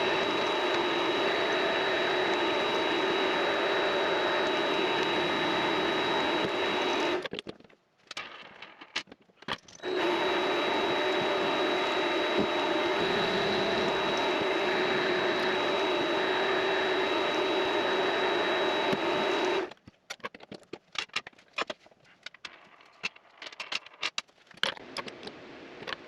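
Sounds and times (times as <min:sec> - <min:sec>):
lathe running with high whine: 0:00.0 - 0:07.3, 0:09.8 - 0:19.7.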